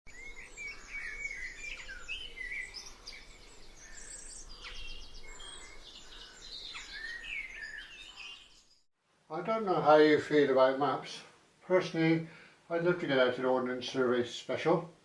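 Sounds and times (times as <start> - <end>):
songbirds chirping and trilling: 0.1 - 8.9.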